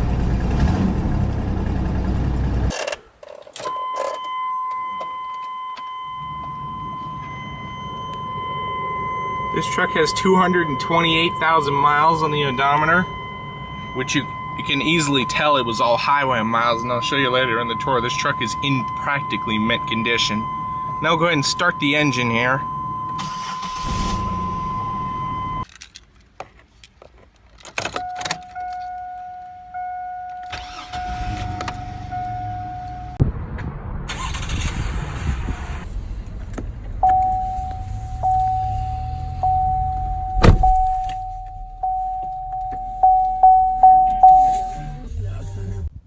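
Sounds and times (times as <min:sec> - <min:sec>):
car warning chime: 0:03.6 - 0:25.7, 0:27.6 - 0:33.2, 0:37.0 - 0:45.0
car engine idling: 0:25.9 - 0:33.2.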